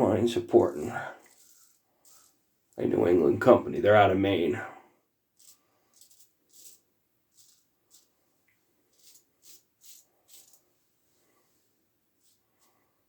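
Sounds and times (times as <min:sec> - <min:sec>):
razor scraping stubble: 0:01.2 - 0:02.4, 0:05.4 - 0:08.1, 0:08.9 - 0:10.6.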